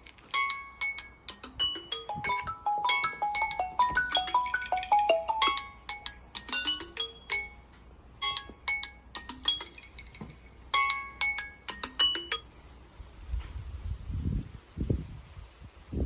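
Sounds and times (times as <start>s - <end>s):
marimba-like alarm tone: 0.5s - 9.8s.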